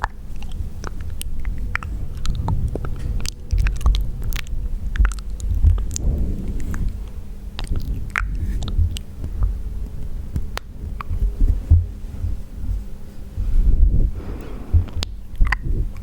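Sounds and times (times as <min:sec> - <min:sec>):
soft low thumping on microphone: 0:05.0 - 0:16.0.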